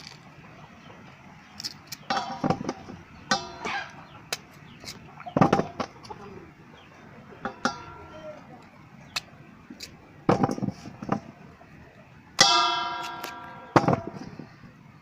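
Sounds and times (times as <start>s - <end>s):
chickens clucking: 2.0s - 9.3s.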